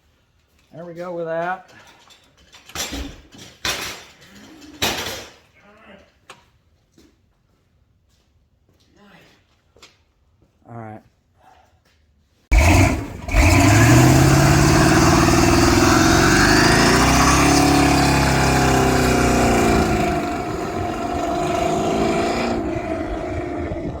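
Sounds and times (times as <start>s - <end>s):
engine running loud: 12.5s - 24.0s.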